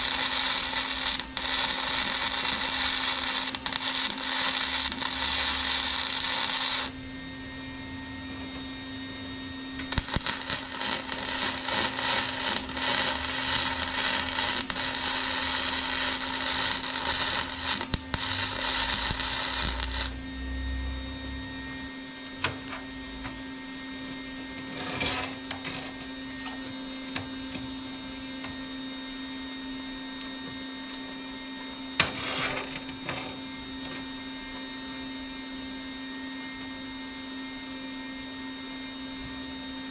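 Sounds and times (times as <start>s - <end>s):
welding arc crackling: 0.0s - 7.0s, 9.8s - 20.2s
welder humming: 0.0s - 7.2s, 9.8s - 21.4s.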